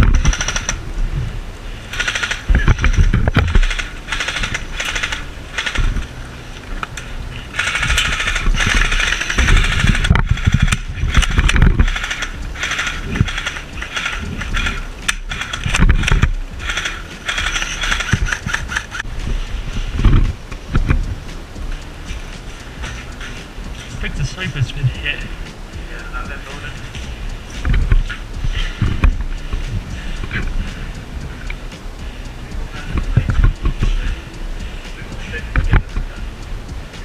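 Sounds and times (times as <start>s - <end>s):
airsoft guns firing full-auto: 1.9s - 2.9s, 3.6s - 5.9s, 10.6s - 15.8s, 16.6s - 18.9s.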